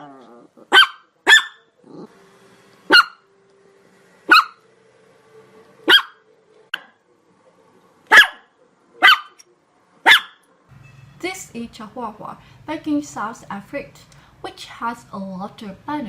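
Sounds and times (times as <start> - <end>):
small dog barking: 0.7 - 1.7, 2.9 - 3.2, 4.3 - 4.6, 5.8 - 7.0, 8.1 - 9.4, 10.0 - 10.5.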